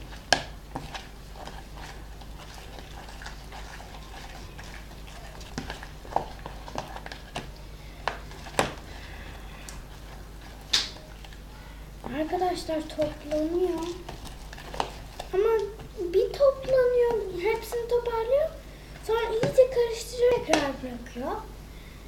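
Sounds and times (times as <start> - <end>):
stirrer scraping a bowl: 0.0 - 11.4, 12.0 - 18.5, 19.1 - 20.8
low steady hum: 0.0 - 22.0.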